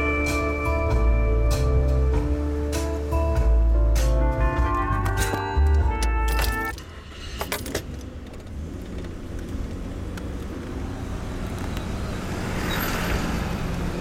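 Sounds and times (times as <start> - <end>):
road traffic rumble: 0.0 - 14.0
vehicle passing: 8.1 - 14.0.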